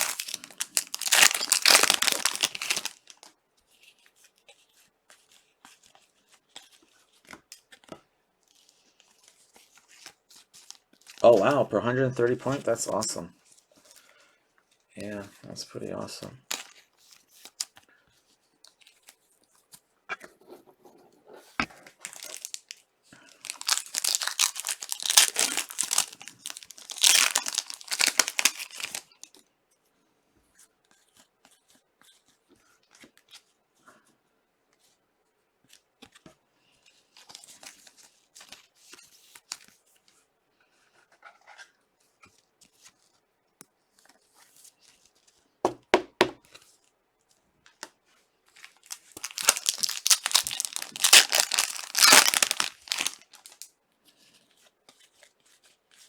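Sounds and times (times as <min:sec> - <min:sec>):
card wrappers tearing and crinkling: 0:00.0 - 0:03.3, 0:09.7 - 0:13.2, 0:16.4 - 0:16.8, 0:22.0 - 0:29.3, 0:48.6 - 0:53.6
faint rustling of cards: 0:00.0 - 0:56.0.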